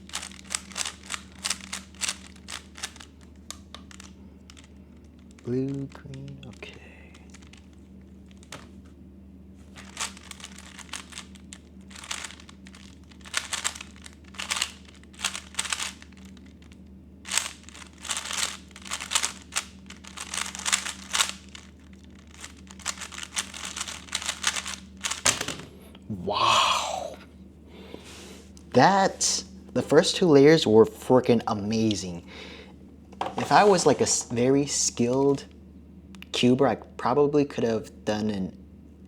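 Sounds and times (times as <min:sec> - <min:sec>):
puzzle cube plastic clicking: 0:00.1 - 0:08.7, 0:09.8 - 0:16.7, 0:17.3 - 0:25.5.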